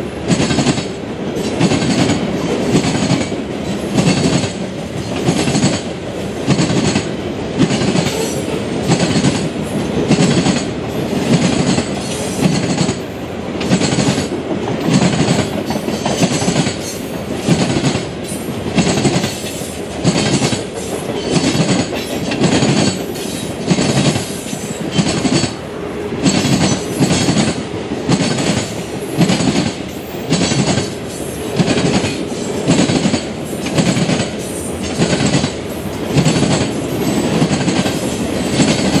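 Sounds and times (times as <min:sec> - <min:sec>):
train wheels clattering over rail joints: 0:00.3 - 0:25.6, 0:26.2 - 0:39.0.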